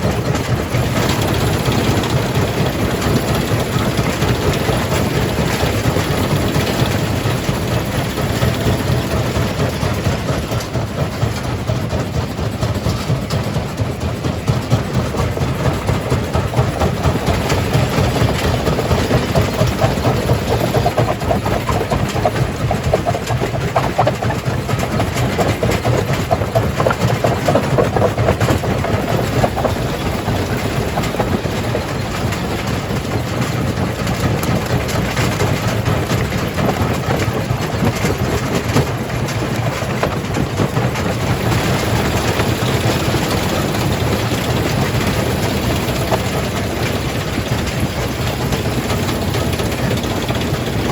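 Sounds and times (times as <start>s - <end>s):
crusher machine drone: 16.7s - 33.3s.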